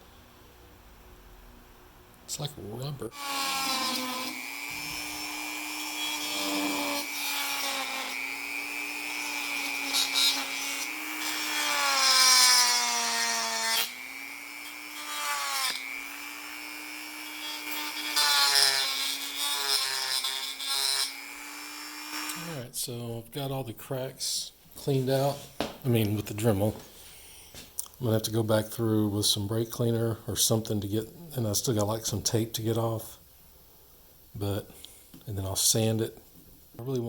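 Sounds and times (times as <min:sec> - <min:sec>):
rotary tool whining: 0:03.2 - 0:22.6.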